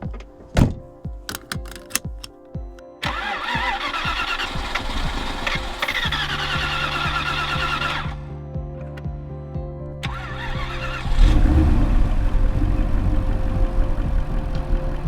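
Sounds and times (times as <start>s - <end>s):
background music with steady beat: 0.0s - 15.0s
car engine starting and idling: 3.0s - 8.2s, 10.0s - 15.0s.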